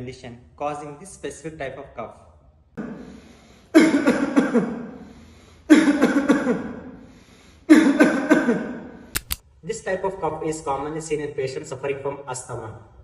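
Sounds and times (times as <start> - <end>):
person coughing: 3.8 - 4.9, 5.7 - 6.8, 7.7 - 8.9.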